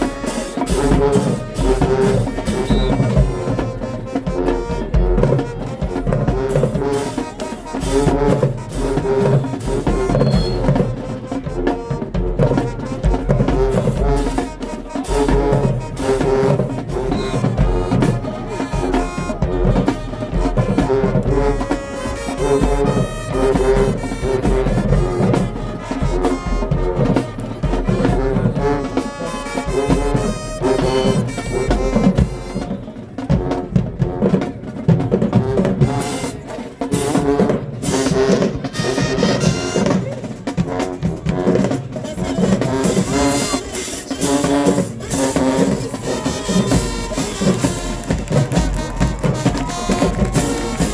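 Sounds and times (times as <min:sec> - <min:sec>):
marching band playing brass: 0:00.0 - 0:50.9.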